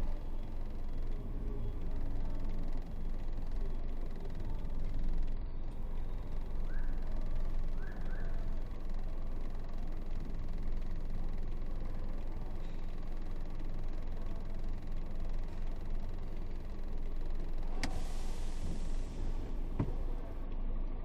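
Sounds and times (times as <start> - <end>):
truck diesel engine rumbling: 0.0 - 21.0
air hiss: 17.7 - 20.3.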